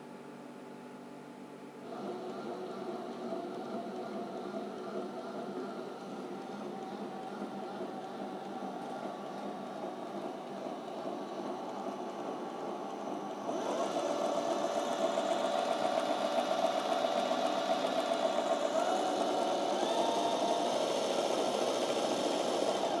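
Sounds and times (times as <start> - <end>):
small electric motor whining: 13.4 - 23.0.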